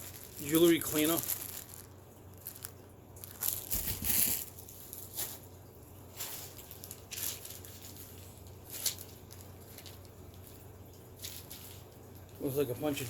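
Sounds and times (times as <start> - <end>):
plastic packaging crinkling: 0.0 - 13.0.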